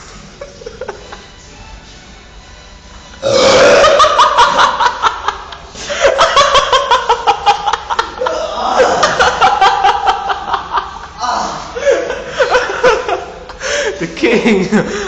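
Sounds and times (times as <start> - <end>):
man belching: 3.2 - 4.1.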